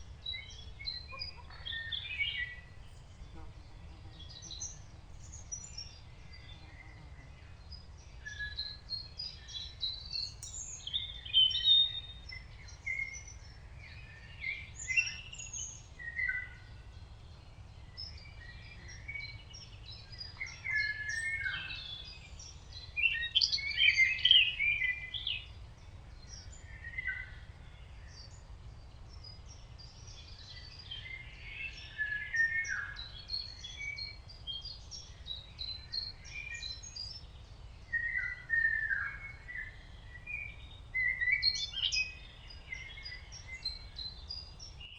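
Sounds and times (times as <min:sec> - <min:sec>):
songbirds singing and chirping: 0:00.0 - 0:44.9.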